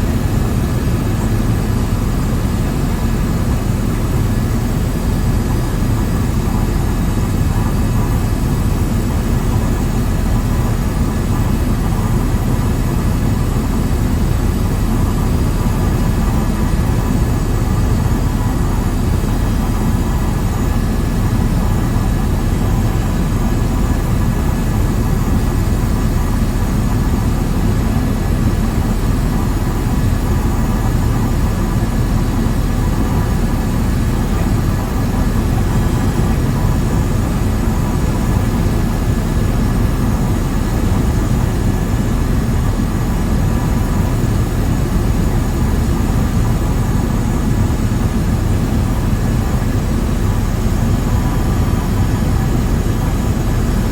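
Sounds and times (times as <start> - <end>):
small aircraft cabin engine noise: 0.0 - 53.9.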